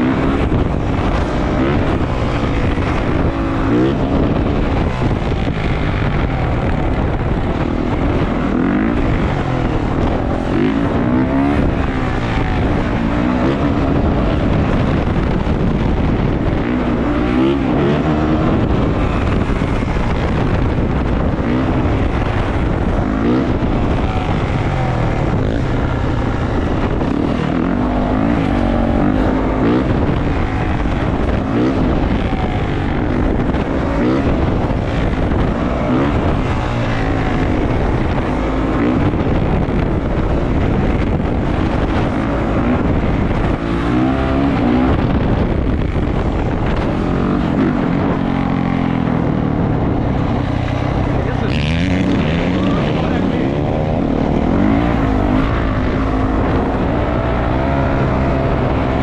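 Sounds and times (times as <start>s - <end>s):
dirt bike engine revving: 0.0s - 59.0s
wind buffeting microphone: 0.0s - 59.0s.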